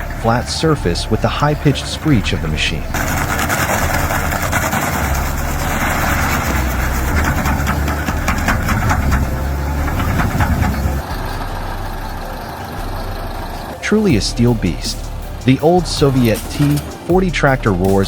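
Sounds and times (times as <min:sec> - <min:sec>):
stump grinder grinding wood: 0:00.0 - 0:17.0
quieter engine running: 0:00.0 - 0:18.0
sharp cracks of wood: 0:03.0 - 0:11.1.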